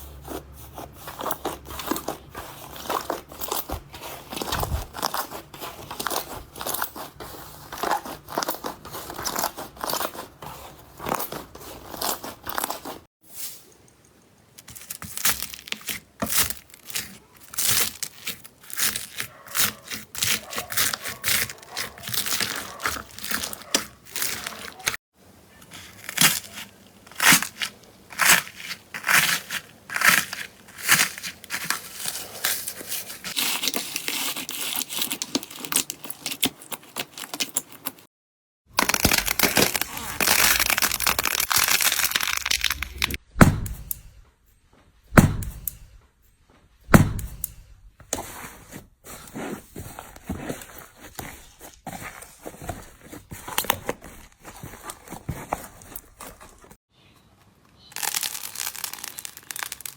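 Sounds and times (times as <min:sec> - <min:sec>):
slime crackling and popping: 0:38.8 - 0:43.2, 0:57.9 - 0:59.9.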